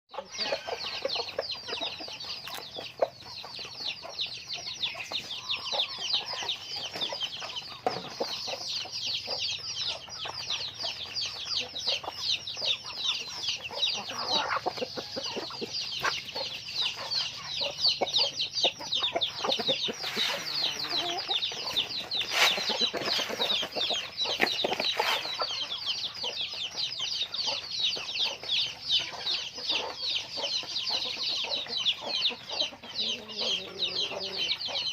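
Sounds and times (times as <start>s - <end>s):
lower chicken calls: 0.1s - 3.1s, 13.2s - 25.8s
chickens chirping in chorus: 0.1s - 34.9s.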